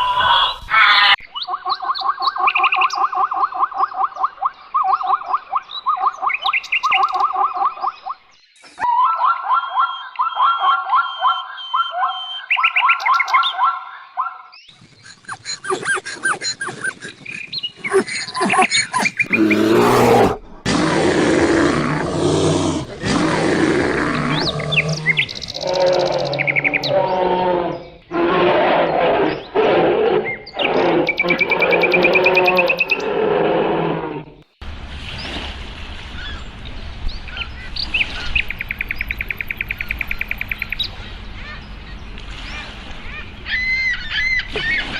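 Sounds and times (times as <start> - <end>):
loud rough animal calls: 17.9 - 34.4.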